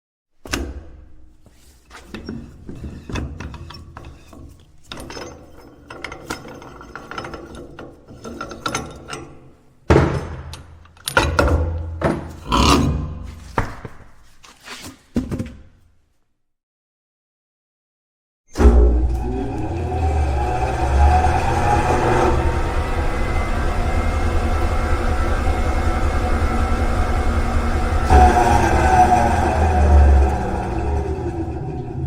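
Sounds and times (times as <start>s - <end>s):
wheel balancing machine working: 1.8s - 9.6s, 18.6s - 32.0s
clicks and ratchet-like knocks: 2.1s - 12.5s.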